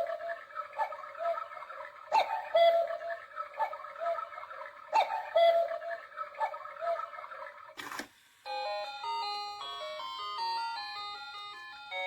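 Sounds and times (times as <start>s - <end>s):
faint cuckoo calls: 0.0s - 7.8s
clock chime melody: 8.5s - 12.0s.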